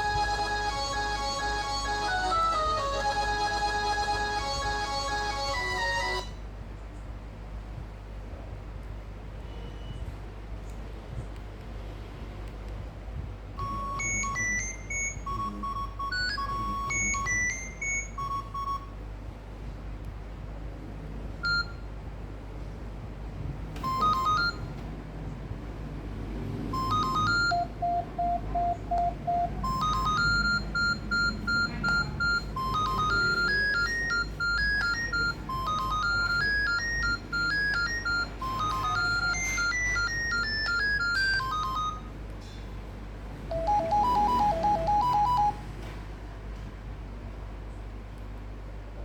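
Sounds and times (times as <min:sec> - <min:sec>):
mobile phone ringtone melody: 0:00.0 - 0:06.4, 0:13.6 - 0:18.9, 0:23.8 - 0:24.8, 0:26.7 - 0:42.2, 0:43.5 - 0:45.7.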